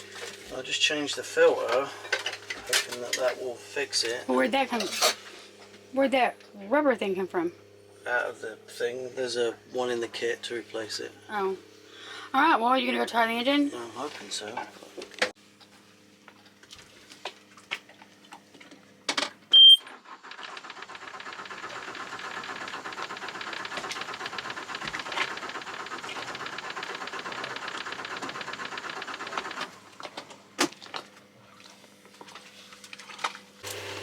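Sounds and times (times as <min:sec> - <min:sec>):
engine panel beep: 0:19.5 - 0:19.9
diesel engine cranking: 0:19.6 - 0:30.3.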